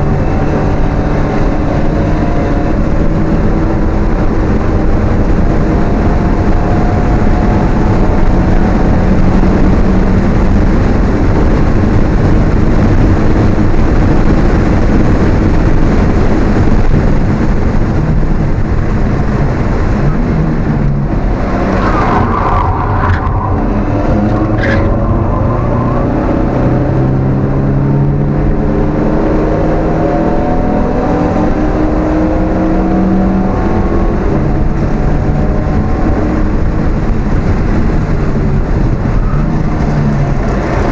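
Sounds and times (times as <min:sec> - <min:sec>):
car engine revving: 0:00.0 - 0:40.9
exhaust cracks: 0:16.2 - 0:27.0.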